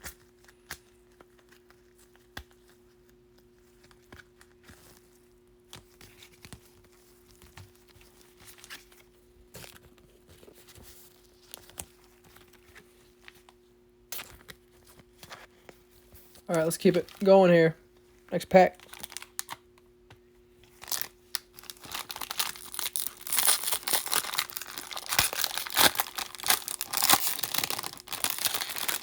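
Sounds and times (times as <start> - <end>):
faint steady hum: 0.0 - 29.0
cards rustling and clicking: 18.6 - 29.0
foil wrapper tearing and crinkling: 18.7 - 19.6, 20.7 - 29.0.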